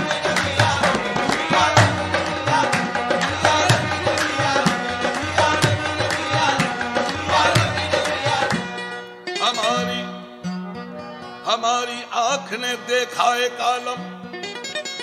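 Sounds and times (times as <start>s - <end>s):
tabla playing fast rhythm: 0.0s - 9.2s.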